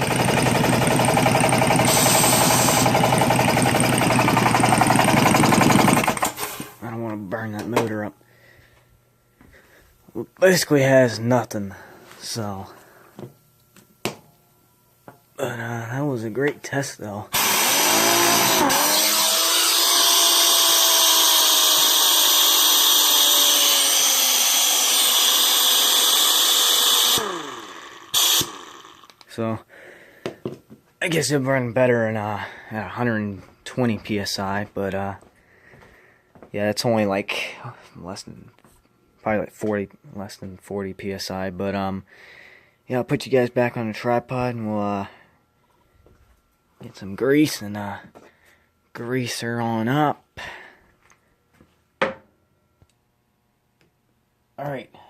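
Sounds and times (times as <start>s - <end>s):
impact wrench rattling: 0.0s - 6.7s, 23.9s - 29.2s.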